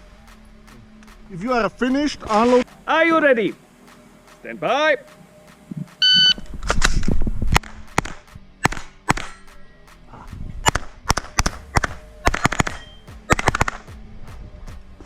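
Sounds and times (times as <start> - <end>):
shot timer beep: 6.0 - 6.4
carbine gunshots: 7.6 - 9.6, 10.6 - 13.9.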